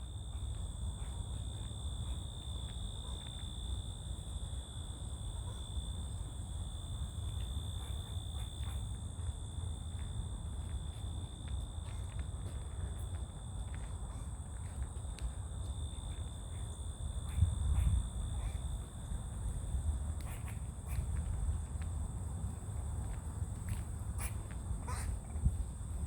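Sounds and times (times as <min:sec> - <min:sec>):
crickets chirring: 0:00.0 - 0:26.0.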